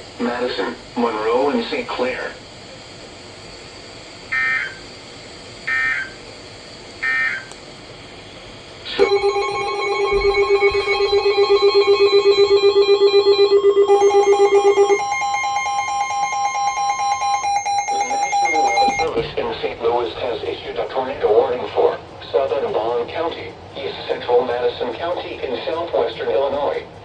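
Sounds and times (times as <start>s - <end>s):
digital data bursts: 9.0s - 19.1s
pulsing electronic alert tone: 9.0s - 19.1s.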